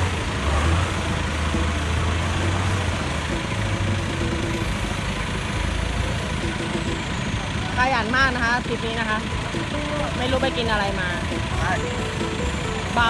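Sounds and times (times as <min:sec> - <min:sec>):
engine idling: 0:00.0 - 0:13.0.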